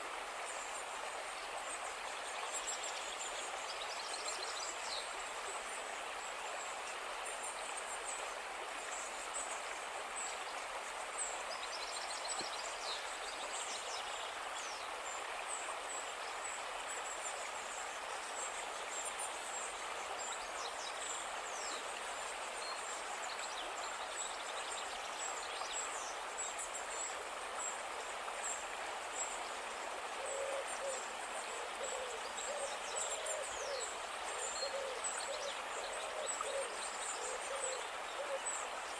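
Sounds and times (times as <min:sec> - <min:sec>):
river water rushing: 0:00.0 - 0:38.9.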